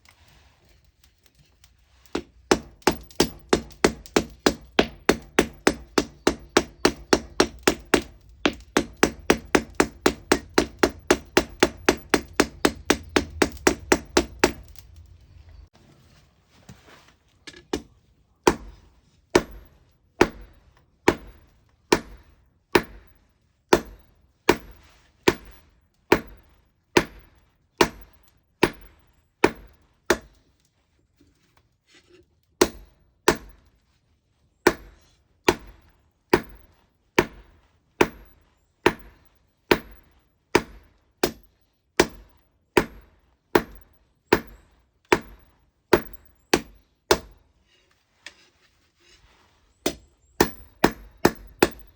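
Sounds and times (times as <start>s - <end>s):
hammer forging an iron bar: 2.1s - 14.9s, 18.5s - 18.8s, 19.4s - 30.4s, 34.7s - 47.4s, 49.8s - 51.9s.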